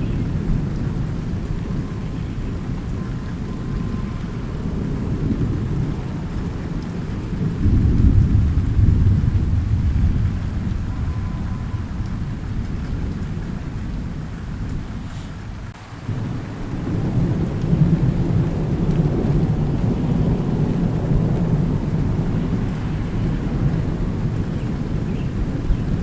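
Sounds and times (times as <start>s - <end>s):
steady rain: 0.0s - 26.0s
thunder rumbling: 0.0s - 26.0s.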